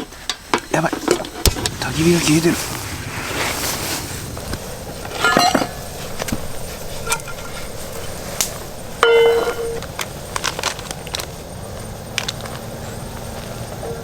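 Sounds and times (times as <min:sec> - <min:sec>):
metal cookware clinking: 0:04.9 - 0:11.2.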